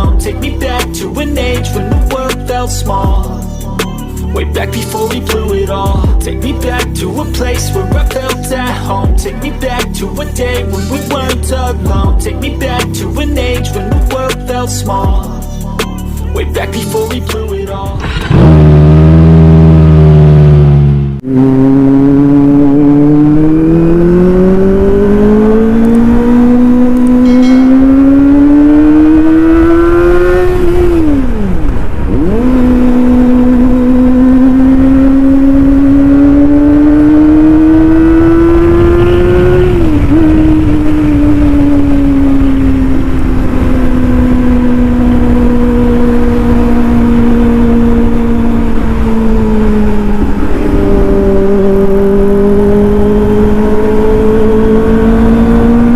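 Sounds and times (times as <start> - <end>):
motorcycle engine revving: 17.8 - 55.9.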